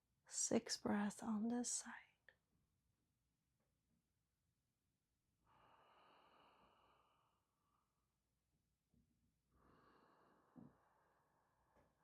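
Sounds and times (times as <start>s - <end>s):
faint slow breathing: 5.4s - 8.2s, 9.5s - 12.0s.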